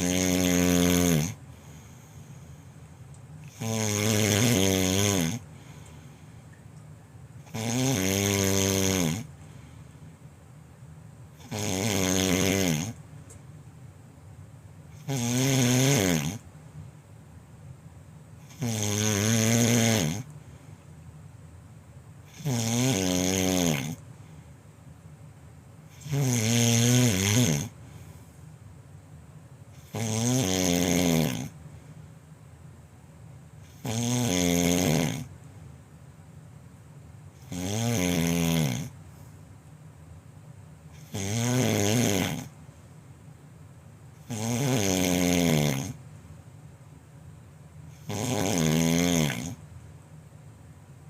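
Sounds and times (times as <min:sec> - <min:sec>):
person snoring loudly: 0:00.0 - 0:01.8, 0:03.4 - 0:05.5, 0:07.5 - 0:09.3, 0:11.4 - 0:13.0, 0:15.0 - 0:16.4, 0:18.4 - 0:20.3, 0:22.3 - 0:24.0, 0:25.9 - 0:27.8, 0:29.8 - 0:31.6, 0:33.7 - 0:35.3, 0:37.4 - 0:39.0, 0:41.0 - 0:42.5, 0:44.2 - 0:46.0, 0:48.0 - 0:49.6.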